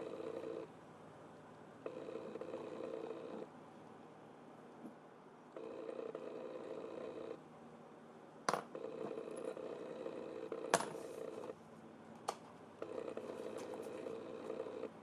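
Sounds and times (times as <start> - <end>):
small electric device humming: 0.0 - 0.7, 1.8 - 3.5, 5.5 - 7.4, 8.6 - 11.6, 12.8 - 15.0.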